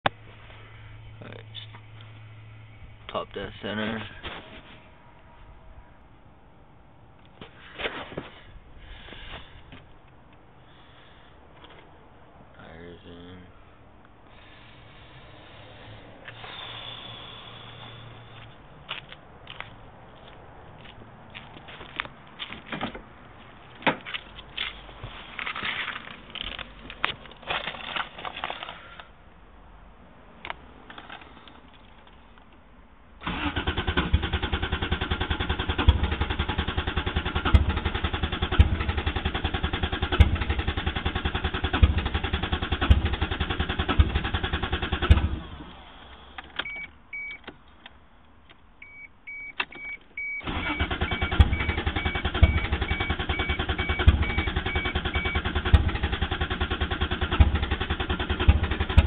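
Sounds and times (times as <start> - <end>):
engine cranking by starter: 33.2 - 45.8, 49.6 - 59.0
repeated electronic beep: 46.6 - 47.4, 48.8 - 55.4.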